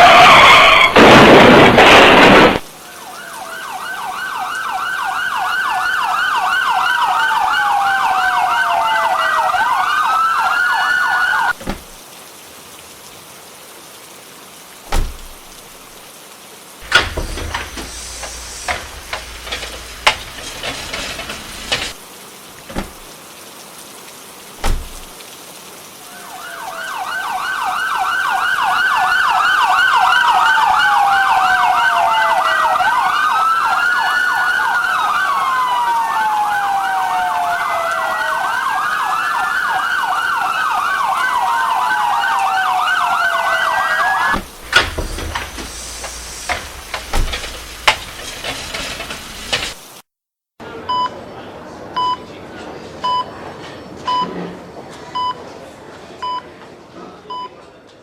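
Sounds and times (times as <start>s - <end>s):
emergency siren yelp and wail: 0.0s - 11.6s, 26.0s - 48.0s
sharp clicks and knocks: 16.8s - 22.0s, 44.4s - 49.8s.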